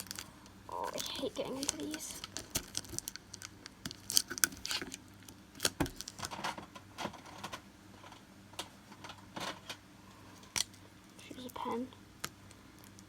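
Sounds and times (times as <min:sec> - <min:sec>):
plastic wrapping rustling: 0:00.0 - 0:07.6.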